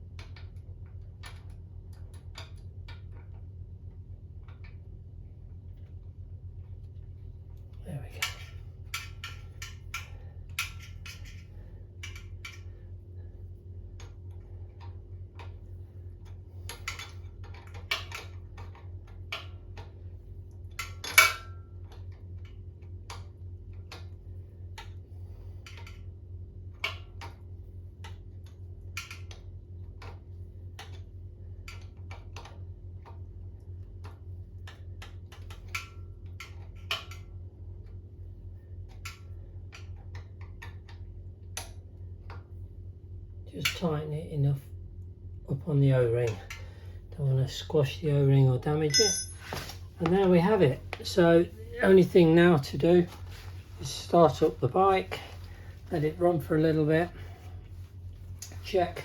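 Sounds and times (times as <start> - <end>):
metal on metal clank: 48.9 - 49.7.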